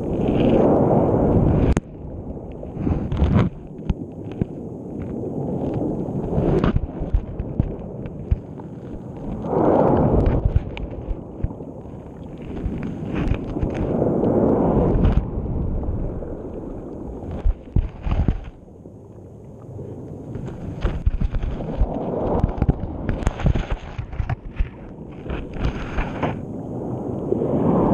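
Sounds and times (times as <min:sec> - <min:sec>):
muffled underwater rushing swells: 0:00.0 - 0:27.9
camera knocking and scraping: 0:03.1 - 0:05.2, 0:06.5 - 0:09.0, 0:10.2 - 0:11.6, 0:12.5 - 0:13.9, 0:17.3 - 0:18.6, 0:20.3 - 0:26.4.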